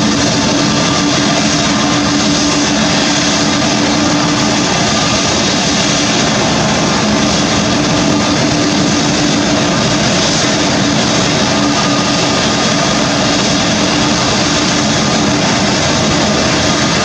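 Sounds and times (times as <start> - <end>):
jet engines running: 0.0 - 17.0.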